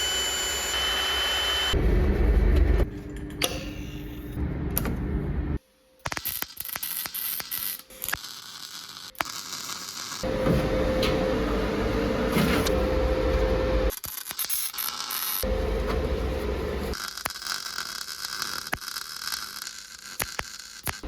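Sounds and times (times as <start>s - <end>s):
sharp crackles and clicks: 6.0s - 10.2s, 16.9s - 21.0s.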